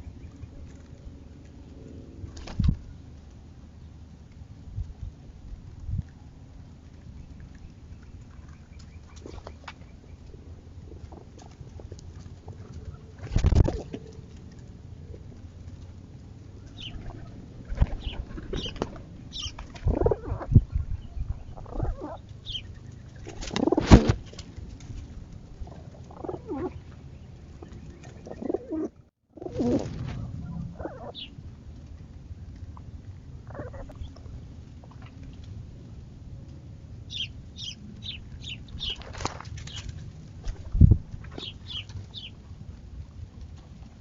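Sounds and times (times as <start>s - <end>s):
wings flapping: 2.2s - 2.9s, 11.1s - 14.5s, 16.7s - 20.5s, 22.6s - 26.7s, 29.4s - 30.4s, 38.8s - 42.3s
pigeons cooing: 16.7s - 20.6s, 21.5s - 22.6s, 25.7s - 26.9s, 27.6s - 31.3s.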